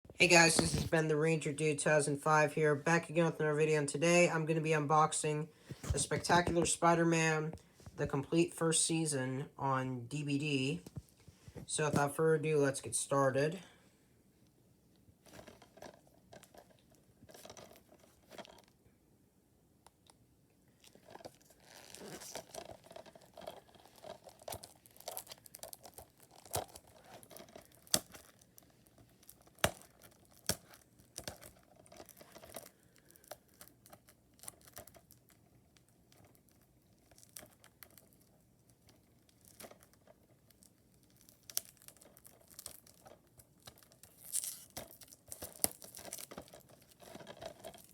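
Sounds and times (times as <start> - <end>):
packaging tearing and crinkling: 20.8 - 47.9.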